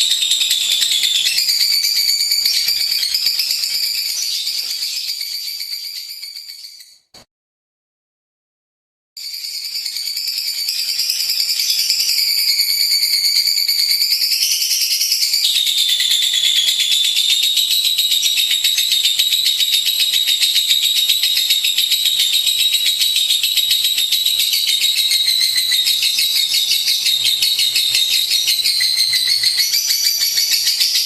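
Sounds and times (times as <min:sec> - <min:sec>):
bird chattering: 0:00.0 - 0:05.1, 0:15.2 - 0:31.0.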